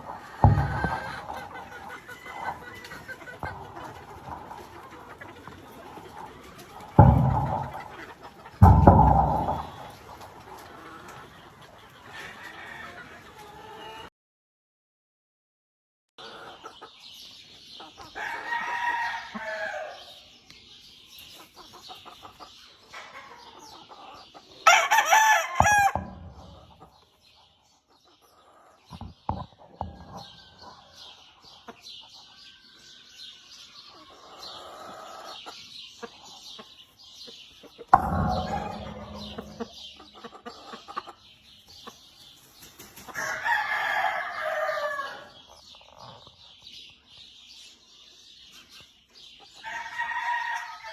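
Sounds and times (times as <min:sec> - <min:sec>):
roosters crowing: 0:00.0 - 0:10.2, 0:18.2 - 0:20.0, 0:24.6 - 0:26.7, 0:43.2 - 0:45.3, 0:49.6 - 0:50.9.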